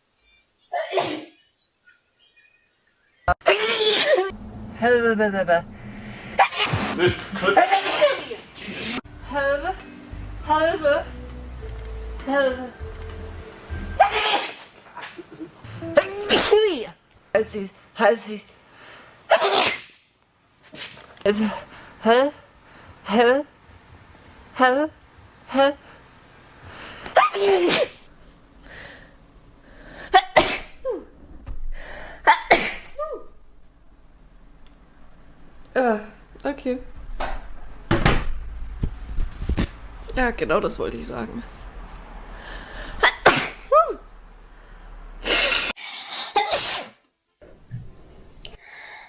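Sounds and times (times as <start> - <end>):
person sneezing: 0.7 - 1.3, 3.4 - 4.3, 6.4 - 9.0, 14.0 - 14.6, 15.8 - 16.7, 19.3 - 20.0, 27.0 - 28.0, 30.1 - 31.0, 32.2 - 33.2, 43.0 - 44.0, 45.2 - 47.0.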